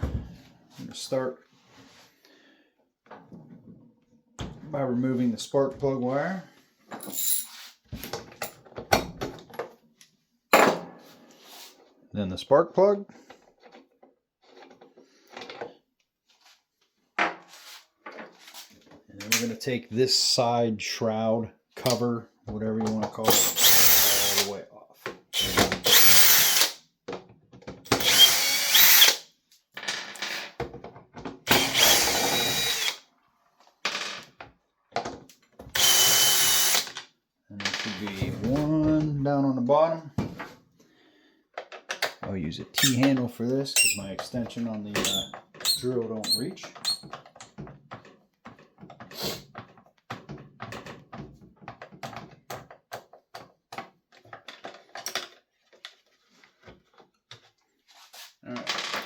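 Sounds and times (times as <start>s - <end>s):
screws and plastic rattling: 7.0s - 7.6s, 31.5s - 33.0s, 42.8s - 43.2s, 43.8s - 56.0s
cordless drill whirring: 23.3s - 24.5s, 25.4s - 26.8s, 27.9s - 29.2s, 31.5s - 33.0s, 35.8s - 37.0s, 42.8s - 43.1s, 43.8s - 44.1s.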